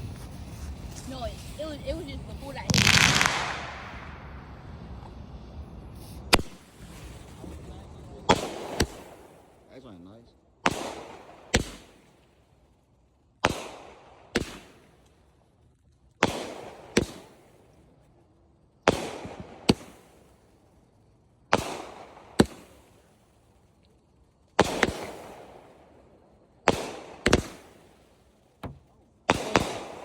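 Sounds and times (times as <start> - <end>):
fireworks bangs with echo: 0.2 - 5.1, 5.9 - 9.8, 10.6 - 12.3, 13.4 - 15.0, 16.2 - 17.8, 18.9 - 20.5, 21.5 - 23.2, 24.6 - 26.0, 26.6 - 30.0.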